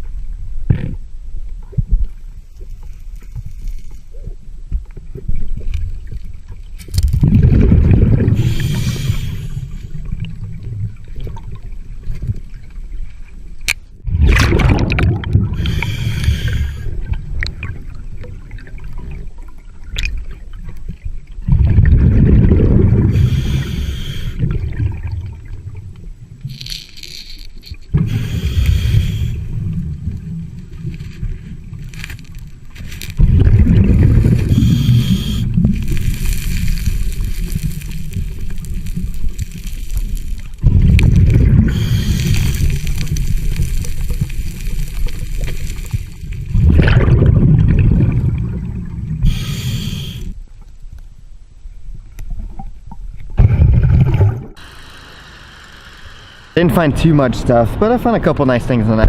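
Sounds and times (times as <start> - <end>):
bubbling exhaled air: 7.1 - 11.5, 14.1 - 19.2, 21.4 - 25.8, 27.9 - 30.2, 33.0 - 50.4, 53.3 - 54.8
scuba regulator inhale hissing: 8.3 - 10.0, 15.5 - 17.1, 23.0 - 24.6, 28.0 - 29.6, 33.9 - 40.4, 41.3 - 46.2, 49.2 - 50.4.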